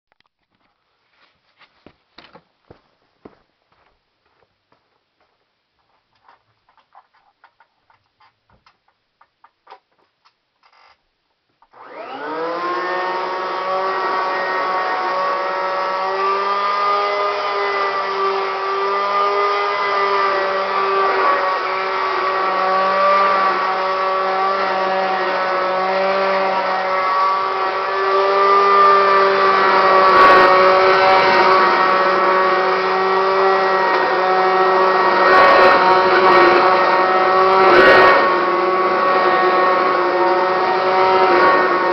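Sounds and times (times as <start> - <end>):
vacuum cleaner motor whining: 11.7 - 41.9.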